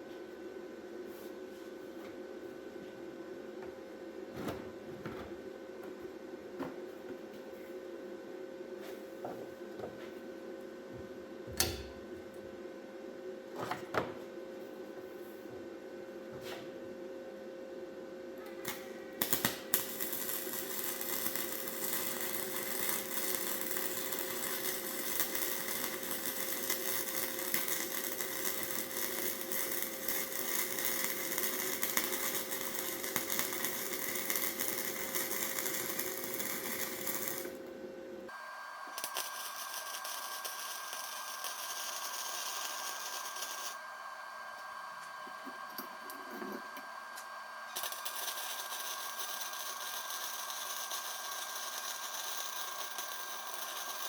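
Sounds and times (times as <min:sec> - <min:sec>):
electric power tool running: 0:19.2 - 0:37.6.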